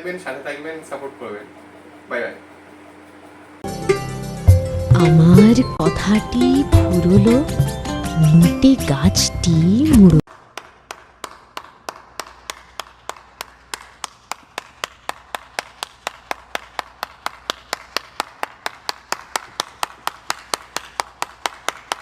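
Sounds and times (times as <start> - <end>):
sharp rhythmic clicks: 4.5 - 11.0.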